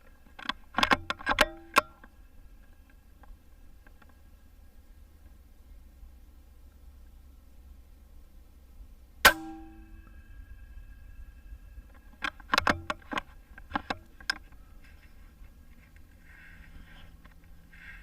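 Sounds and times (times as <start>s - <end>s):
metallic clicks of rifle handling: 0.3s - 2.1s, 11.9s - 14.6s
air rifle shot: 9.2s - 10.0s.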